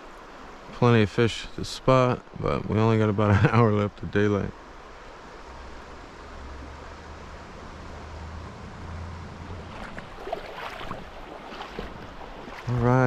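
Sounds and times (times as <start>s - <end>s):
creek water rushing: 0.0s - 13.0s
splashes of wading: 4.6s - 13.0s.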